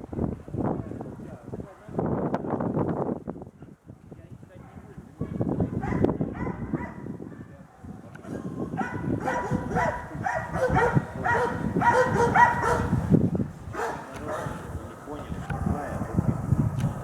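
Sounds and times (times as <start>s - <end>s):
dog barking: 4.6s - 13.0s, 13.7s - 16.9s.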